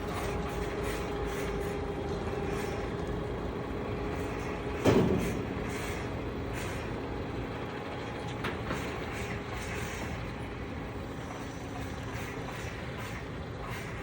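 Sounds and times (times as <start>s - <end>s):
heavy machine engine humming: 0.0s - 14.0s
loud ringing clunk: 4.8s - 6.8s.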